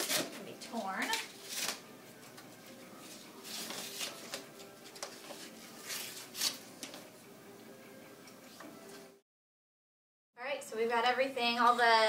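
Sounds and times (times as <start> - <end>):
packaging tearing and rustling: 1.1 - 1.9.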